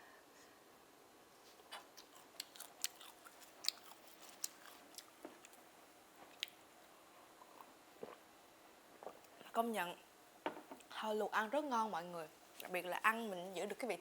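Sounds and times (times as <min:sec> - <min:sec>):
wet chewing mouth clicks: 0:01.7 - 0:05.6.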